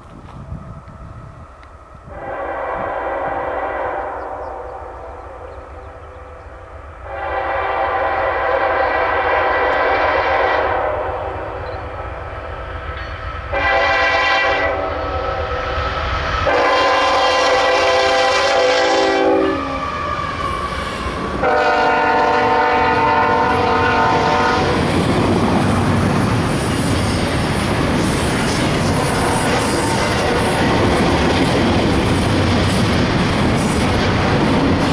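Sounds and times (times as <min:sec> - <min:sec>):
train rumbling and clattering past: 0:00.0 - 0:34.9
locomotive air horn blasts: 0:02.0 - 0:06.0, 0:07.0 - 0:11.6, 0:13.5 - 0:20.7, 0:21.4 - 0:24.8, 0:28.4 - 0:30.7.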